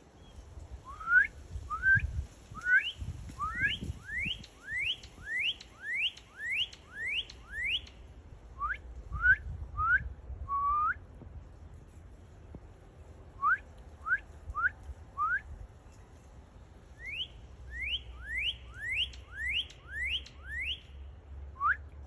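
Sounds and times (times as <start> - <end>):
cardinal whistled song: 0.8 - 8.0, 8.6 - 11.0, 13.4 - 15.5, 17.0 - 21.0, 21.6 - 21.9.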